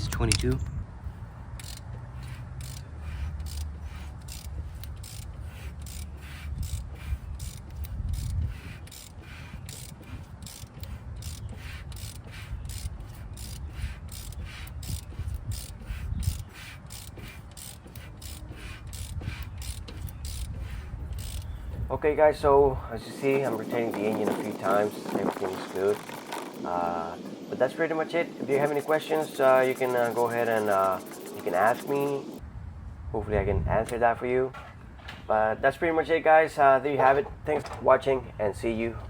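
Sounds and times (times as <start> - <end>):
hand ratchet clicking: 1.6 - 21.6.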